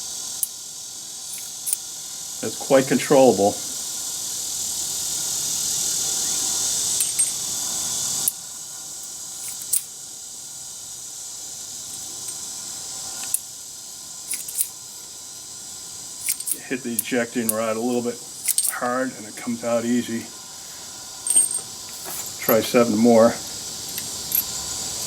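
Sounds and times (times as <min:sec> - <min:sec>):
steady hiss: 0:00.0 - 0:25.0
revolver metallic clicks: 0:13.2 - 0:13.5, 0:14.3 - 0:14.8, 0:16.2 - 0:17.6, 0:18.3 - 0:18.8, 0:21.2 - 0:25.0.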